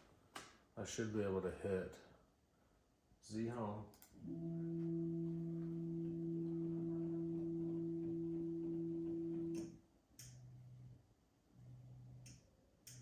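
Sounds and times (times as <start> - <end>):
stepper motor whine: 4.2 - 9.8.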